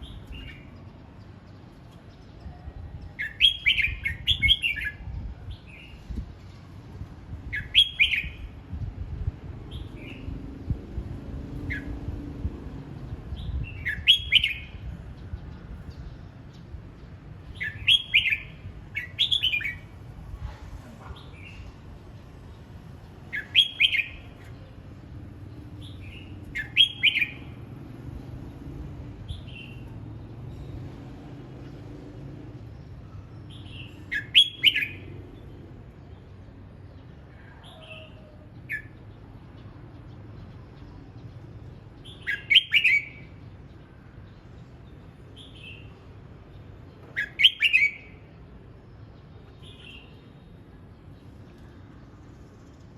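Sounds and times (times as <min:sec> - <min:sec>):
bulbul singing: 0:03.2 - 0:05.1, 0:13.4 - 0:20.0, 0:23.2 - 0:24.8, 0:25.4 - 0:27.8, 0:32.8 - 0:35.5, 0:37.7 - 0:48.4.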